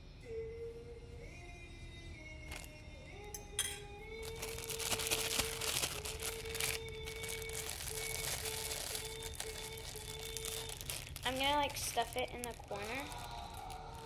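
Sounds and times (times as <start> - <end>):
background music with held notes: 0.0 - 14.0
plastic bag crinkling: 4.2 - 14.0.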